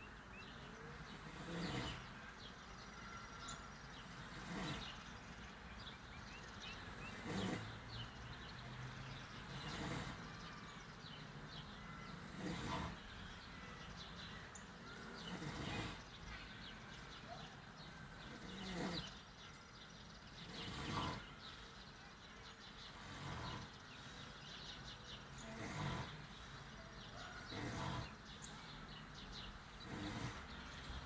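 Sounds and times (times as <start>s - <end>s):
man snoring: 1.1s - 2.0s, 4.2s - 4.9s, 7.1s - 7.8s, 9.5s - 10.2s, 12.2s - 13.0s, 14.9s - 16.0s, 18.3s - 19.1s, 20.5s - 21.2s, 22.9s - 23.7s, 25.4s - 26.3s, 27.5s - 28.2s, 29.8s - 30.6s.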